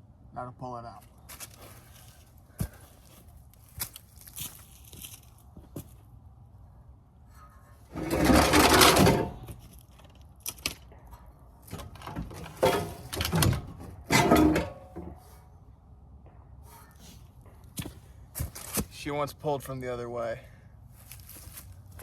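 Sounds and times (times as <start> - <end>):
metal exhaust scraping and clunking: 7.3 - 9.8, 10.9 - 15.6.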